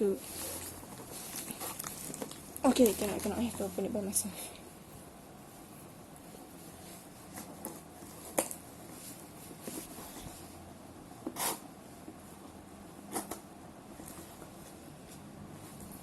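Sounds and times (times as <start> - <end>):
package rustling and scraping: 0.3 - 3.7.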